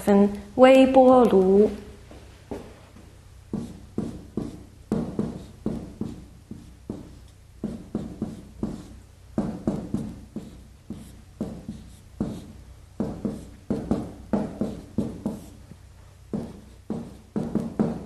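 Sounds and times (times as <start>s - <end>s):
pen writing strokes: 3.5s - 15.6s, 16.3s - 18.0s.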